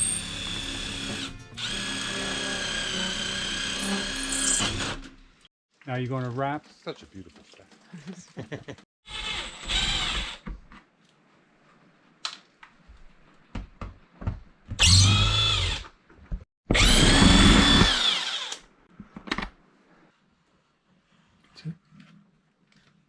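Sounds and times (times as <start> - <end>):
power drill whine: 0.0 - 5.2, 9.1 - 10.4, 14.8 - 15.8, 16.7 - 18.6.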